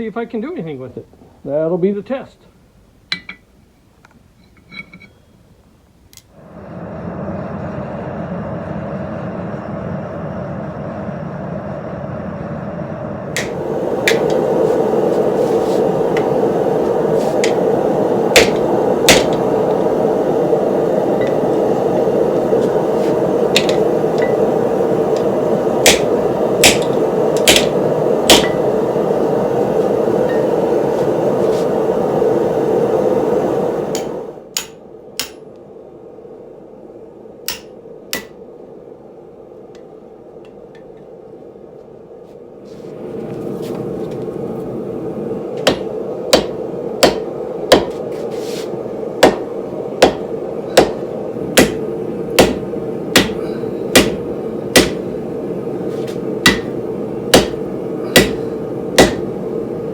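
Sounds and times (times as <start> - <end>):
forge burner roaring: 5.7 - 59.9
hammer striking steel: 13.4 - 14.5, 18.3 - 19.9, 23.5 - 24.6, 25.2 - 28.8, 34.0 - 35.5, 37.5 - 38.4, 45.6 - 48.0, 49.2 - 55.1, 56.4 - 59.4.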